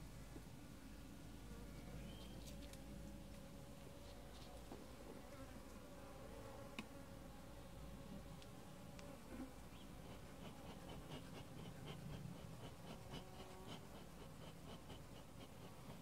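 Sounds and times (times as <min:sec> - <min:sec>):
honeybees buzzing: 0:08.8 - 0:14.5.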